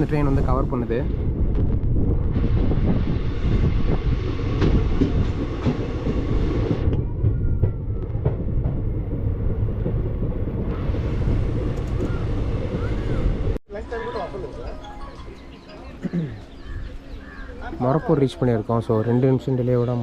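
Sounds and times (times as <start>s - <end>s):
train wheels rumbling on rails: 0.0s - 13.6s
rail joint clicks and knocks: 4.5s - 13.0s.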